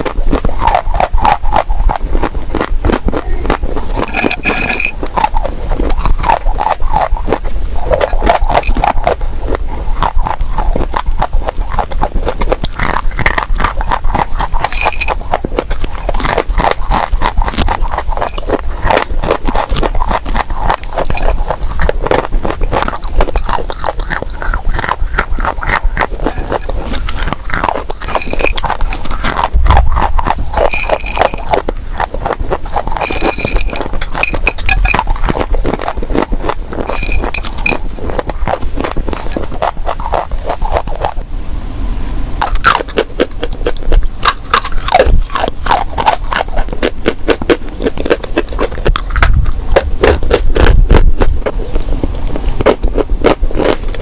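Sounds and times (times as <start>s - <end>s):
dry clay crunching and crumbling: 0.0s - 41.2s.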